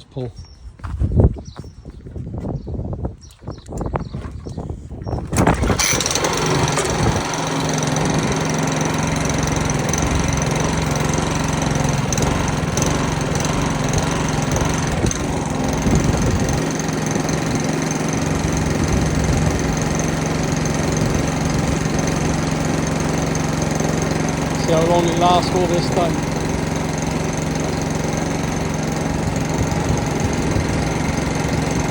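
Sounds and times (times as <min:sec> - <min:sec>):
lawnmower engine starting and running: 0:04.4 - 0:31.9.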